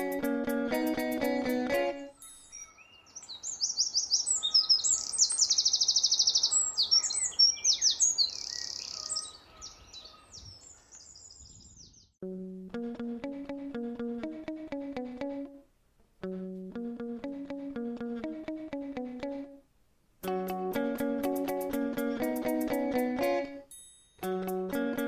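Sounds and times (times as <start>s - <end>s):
plucked guitar music: 0.0s - 2.2s, 12.2s - 25.0s
songbird trilling: 2.1s - 12.2s
faint steady hiss: 14.6s - 22.0s.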